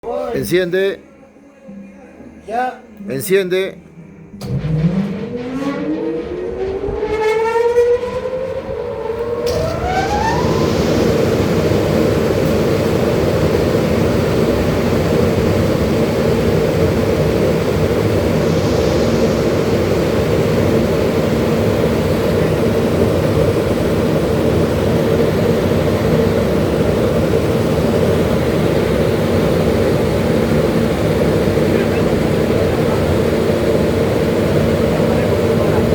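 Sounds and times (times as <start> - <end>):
extractor fan motor whine: 3.8 - 35.9
rush of air: 4.4 - 31.5.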